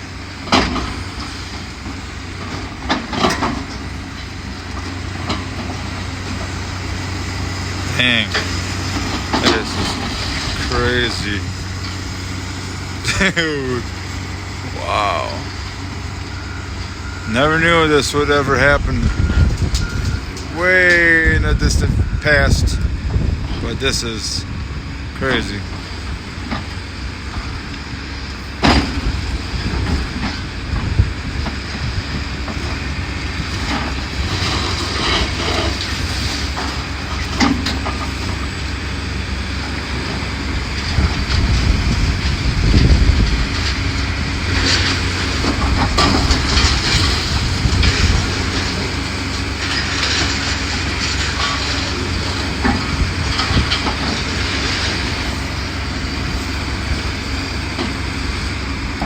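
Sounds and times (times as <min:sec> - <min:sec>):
demolition machine engine: 0:00.0 - 0:59.0
heavy rumbling crash: 0:40.9 - 0:55.6
debris clattering and crashing: 0:42.8 - 0:55.6.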